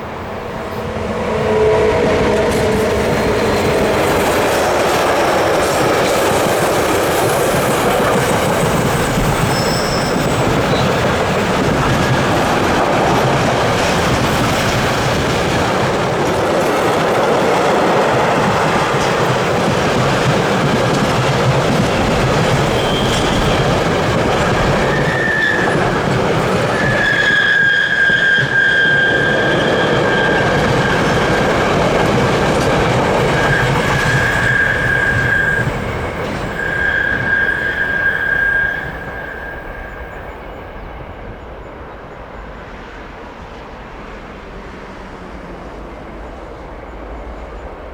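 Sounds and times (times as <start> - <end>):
train running on rails: 0.0 - 47.9
train wheels squealing: 0.6 - 15.0, 20.4 - 43.0.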